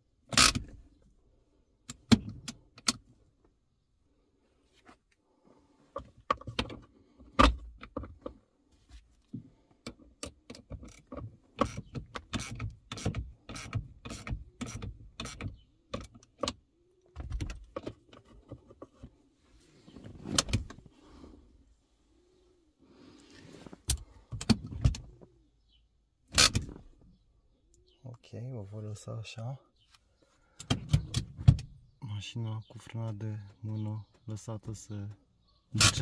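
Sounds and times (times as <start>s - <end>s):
hand brake ratcheting clicks: 0.2s - 0.9s, 1.8s - 3.1s, 6.0s - 8.4s, 9.8s - 16.6s, 23.8s - 25.3s, 26.3s - 26.9s, 30.6s - 31.8s.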